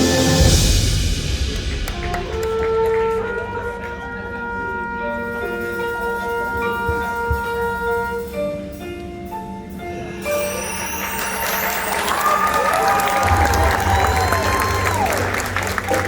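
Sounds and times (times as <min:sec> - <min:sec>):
low drum strokes: 0:00.0 - 0:04.0
wind and brass sustained chords: 0:00.0 - 0:08.8.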